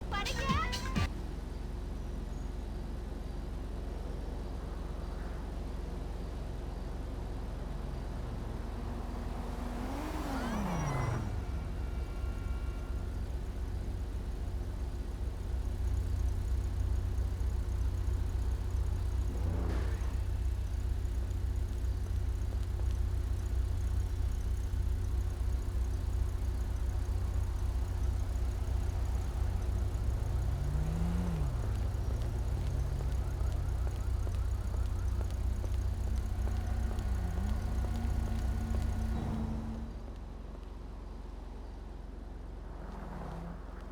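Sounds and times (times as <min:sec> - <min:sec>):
car engine idling and revving: 0:00.0 - 0:43.9.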